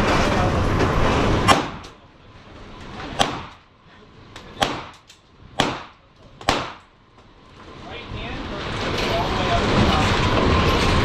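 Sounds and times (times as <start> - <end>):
loud rushing noise: 0.0 - 1.8
rifle shots echoing: 4.6 - 6.9.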